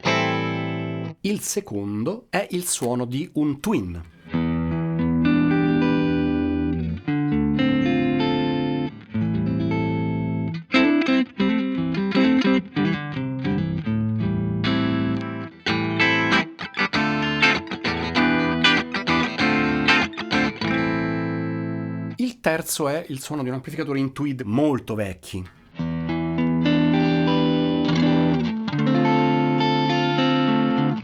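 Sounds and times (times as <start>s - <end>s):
electric guitar: 0.0s - 1.2s, 4.1s - 22.2s, 25.6s - 31.0s.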